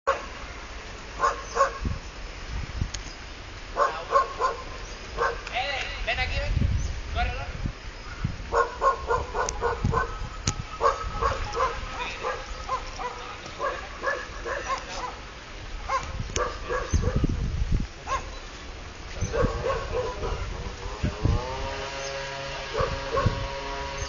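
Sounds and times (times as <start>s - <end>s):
dog barking: 0.1s - 0.3s, 1.2s - 1.9s, 3.8s - 5.5s, 8.5s - 15.2s, 15.9s - 17.3s, 18.1s - 18.4s, 19.2s - 20.5s, 22.7s - 23.4s
wind rumbling on microphone: 0.1s - 24.0s.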